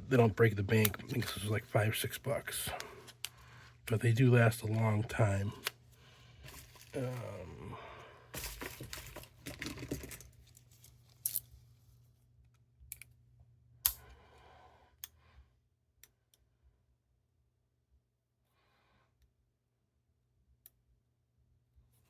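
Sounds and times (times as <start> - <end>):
crinkly packaging rustling: 4.6 - 7.6, 8.3 - 11.8.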